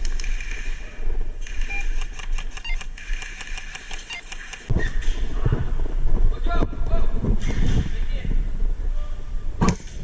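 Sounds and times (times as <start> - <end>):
microphone handling noise: 2.0 - 10.0
low wind rumble: 4.4 - 10.0.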